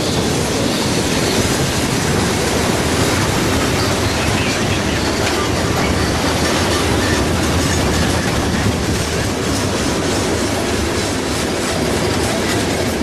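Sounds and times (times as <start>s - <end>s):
freight train rumbling past: 0.0s - 13.0s.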